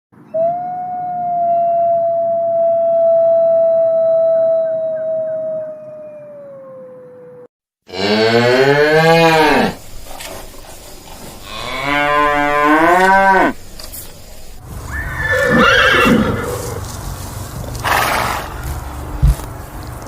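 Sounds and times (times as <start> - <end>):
cow mooing: 7.9 - 9.8, 11.4 - 13.6
horse neighing: 14.9 - 16.8.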